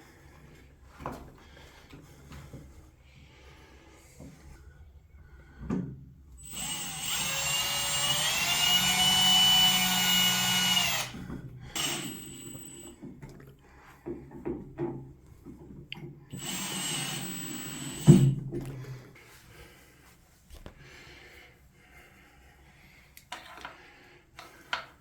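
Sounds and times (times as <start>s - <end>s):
cordless drill whining: 6.4s - 13.0s, 16.3s - 18.4s.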